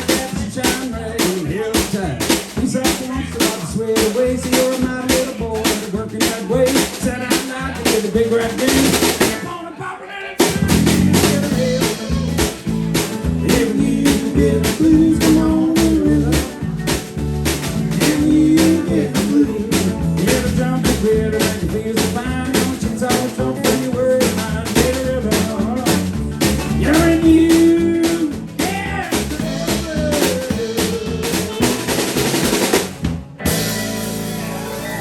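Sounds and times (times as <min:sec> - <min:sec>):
drum kit beat: 0:00.0 - 0:09.6, 0:10.4 - 0:35.0
pedal steel guitar: 0:10.7 - 0:21.6, 0:25.2 - 0:35.0.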